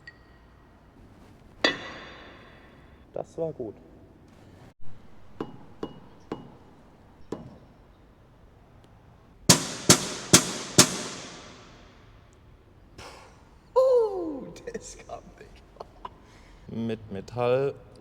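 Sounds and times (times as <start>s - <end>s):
metal rod striking metal: 1.6s - 2.7s, 5.2s - 7.6s, 9.5s - 12.0s.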